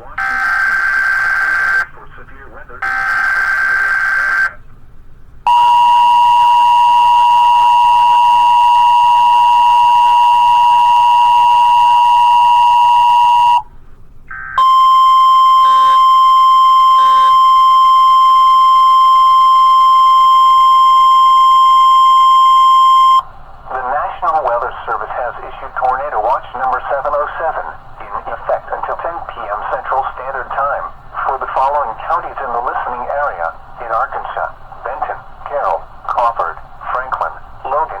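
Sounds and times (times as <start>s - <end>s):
data burst tones: 0.2s - 1.8s, 2.8s - 4.6s, 5.5s - 13.6s, 14.3s - 24.8s
two-tone attention signal: 5.5s - 13.6s, 14.6s - 23.3s.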